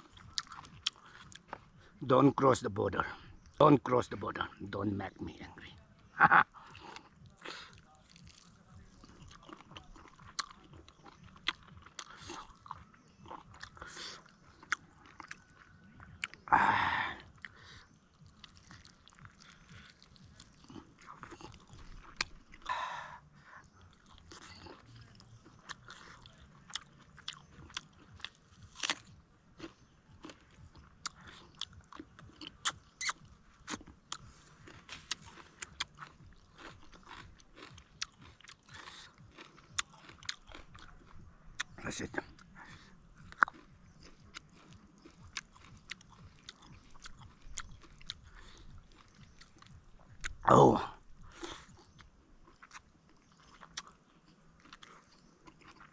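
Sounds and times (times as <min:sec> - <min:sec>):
chewing and crunching ribs: 0:00.0 - 0:55.9.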